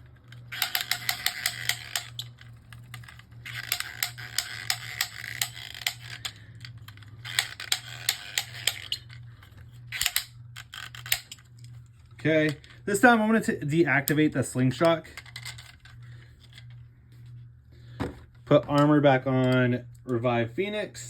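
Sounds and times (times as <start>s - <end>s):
ratchet clicking rapidly: 0.2s - 9.1s, 9.9s - 11.5s.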